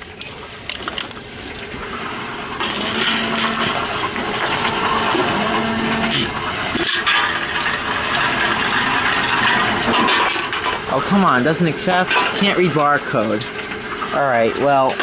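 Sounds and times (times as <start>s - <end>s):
cans rattling and clinking: 0.0s - 15.0s
vending machine mechanism running: 0.0s - 15.0s
short steady hum: 2.0s - 6.8s.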